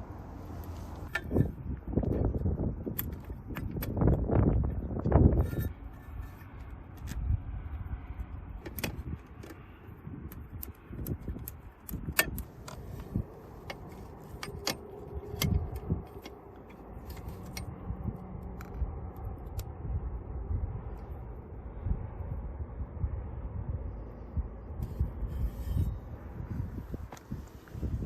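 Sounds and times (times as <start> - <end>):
low rumble: 12.4 - 28.0.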